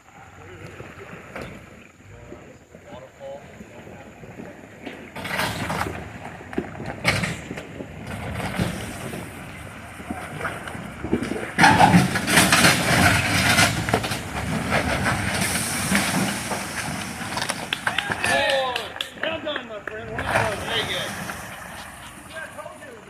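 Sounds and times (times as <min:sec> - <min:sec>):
off-road vehicle engine: 0:00.0 - 0:23.0
tyres over uneven ground: 0:00.0 - 0:23.0
knocks and rattles: 0:04.8 - 0:19.3.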